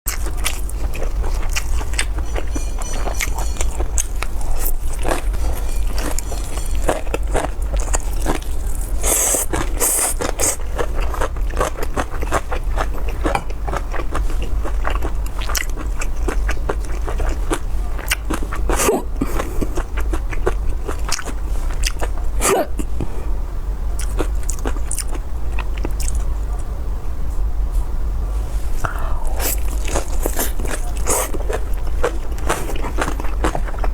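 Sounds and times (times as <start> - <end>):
person chewing food: 0.1 - 23.0, 24.0 - 26.3, 28.7 - 33.9
steady low hum: 0.1 - 33.9
wet mouth clicks and crunches: 28.8 - 33.9.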